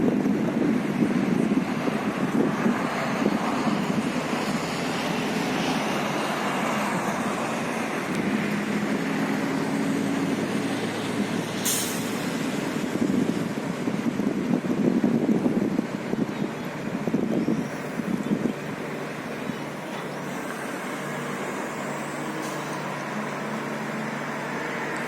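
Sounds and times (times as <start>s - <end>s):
heavy vehicle engine running: 0.0s - 25.0s
street noise: 0.0s - 25.0s
short sharp hiss: 11.6s - 12.2s.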